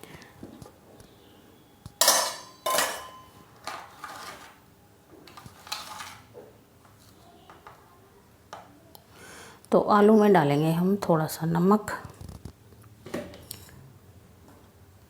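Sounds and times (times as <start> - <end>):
metal utensils clanking: 2.0 - 4.6, 5.6 - 6.3.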